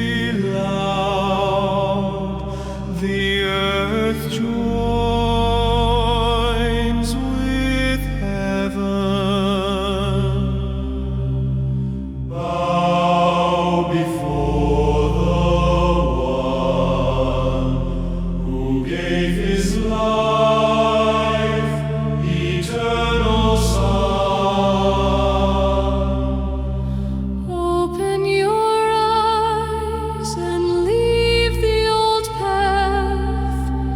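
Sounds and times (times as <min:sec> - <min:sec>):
choir singing wordless chords: 0:00.0 - 0:33.9
sustained low bass: 0:00.0 - 0:33.9.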